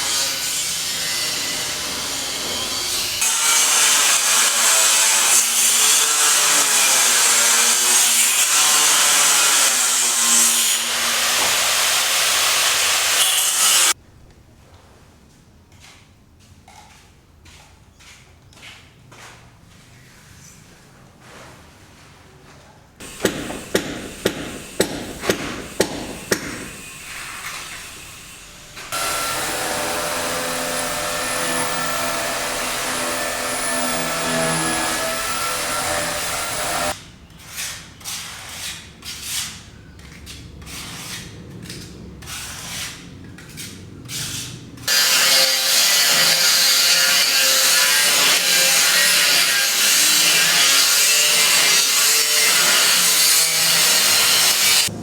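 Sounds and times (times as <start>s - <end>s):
wood being sawn: 0.0s - 14.0s, 23.0s - 37.0s
sharp knocks: 23.0s - 28.1s
power tool running: 23.0s - 37.0s.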